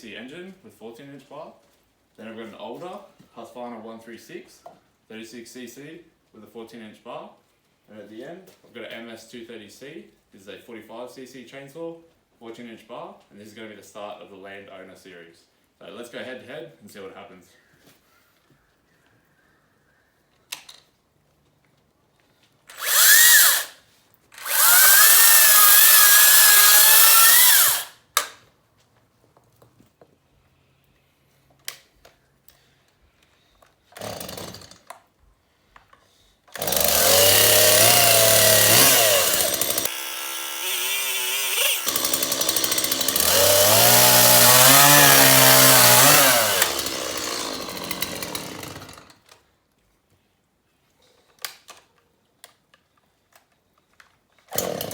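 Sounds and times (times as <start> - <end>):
chainsaw revving: 22.7 - 23.8, 24.4 - 28.0, 34.0 - 34.9, 36.6 - 49.2, 54.5 - 54.9.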